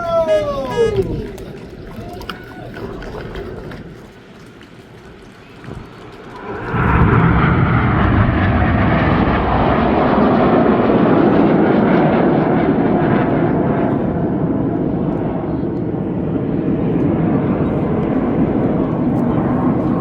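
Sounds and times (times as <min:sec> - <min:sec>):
jets flying past: 0:05.5 - 0:20.0.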